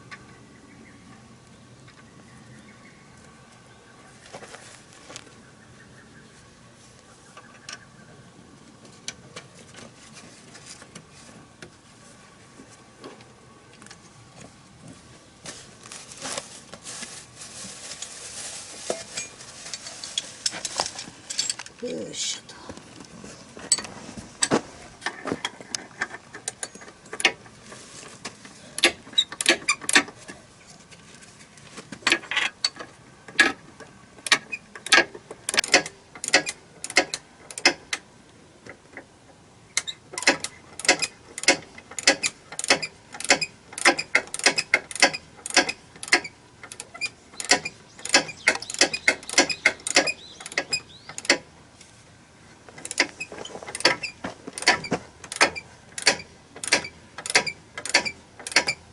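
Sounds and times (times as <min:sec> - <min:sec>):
ratchet wrench clicking: 0:34.3 - 0:37.8, 0:39.8 - 0:51.4, 0:52.8 - 0:53.1, 0:53.7 - 0:58.8.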